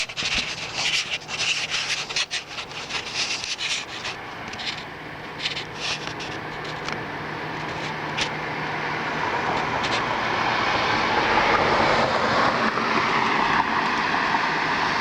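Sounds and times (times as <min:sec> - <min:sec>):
rubbing and scraping noises: 0:00.0 - 0:08.4, 0:09.4 - 0:10.2.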